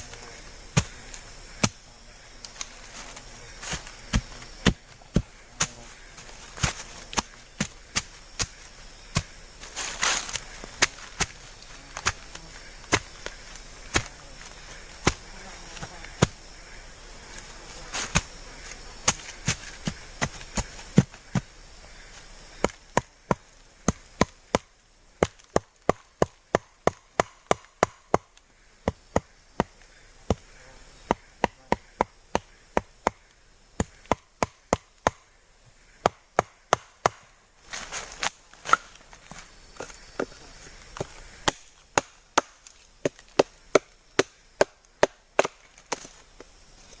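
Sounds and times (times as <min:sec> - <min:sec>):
steady high hiss: 0:00.0 - 0:22.7.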